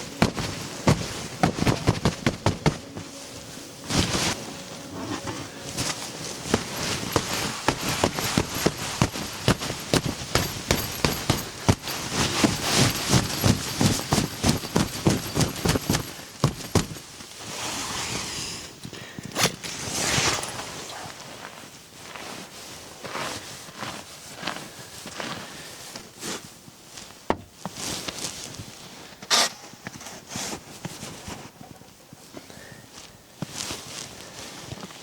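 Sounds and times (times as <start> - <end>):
rustling swishes: 0.0 - 18.5.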